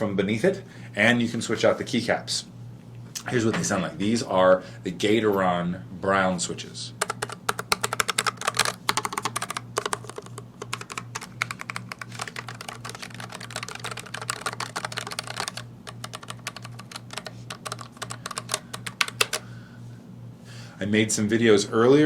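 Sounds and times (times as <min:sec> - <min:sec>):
mechanical keyboard typing: 0:07.0 - 0:19.4.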